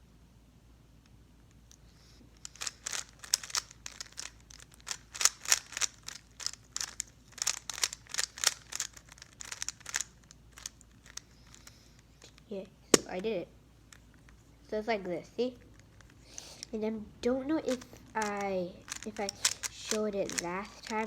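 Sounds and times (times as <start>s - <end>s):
puzzle cube clicking: 2.4s - 13.3s, 17.6s - 21.0s.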